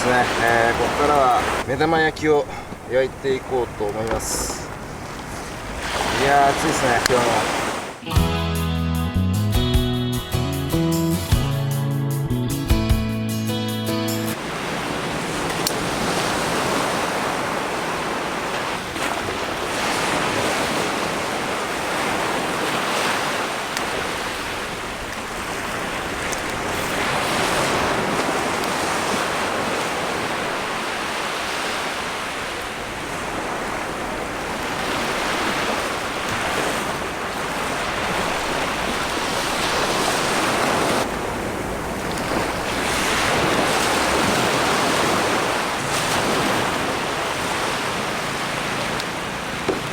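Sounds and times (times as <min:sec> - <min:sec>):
ocean waves breaking on shore: 0:00.0 - 0:08.2, 0:13.9 - 0:49.9
wind on microphone: 0:14.4 - 0:49.9.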